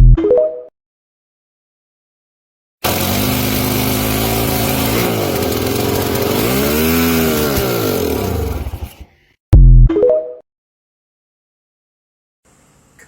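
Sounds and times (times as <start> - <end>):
small motor running: 2.8 - 9.1.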